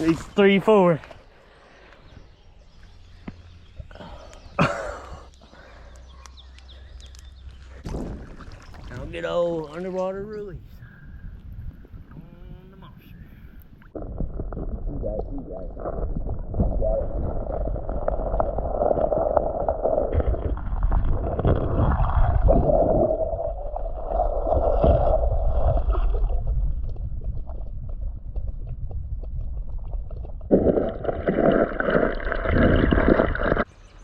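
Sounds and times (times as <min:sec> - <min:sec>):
muffled underwater water gurgling: 0:13.8 - 0:27.4, 0:30.5 - 0:33.7.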